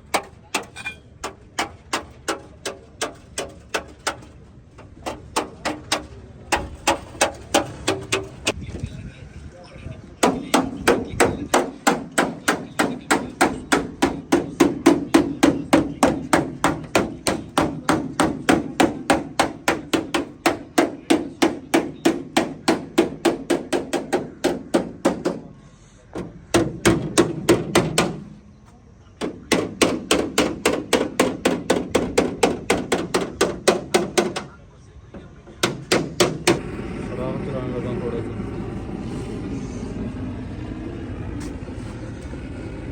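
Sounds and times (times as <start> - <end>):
hammer striking sheet metal: 5.0 - 8.6, 10.2 - 25.5.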